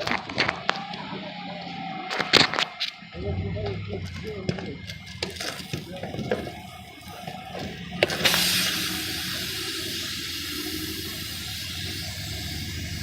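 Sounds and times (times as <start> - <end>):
air hissing from tire: 5.0 - 13.0.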